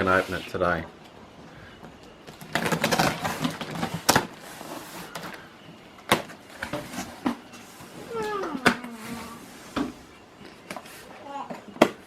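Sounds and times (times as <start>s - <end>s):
packaging tearing and rustling: 2.4s - 5.3s.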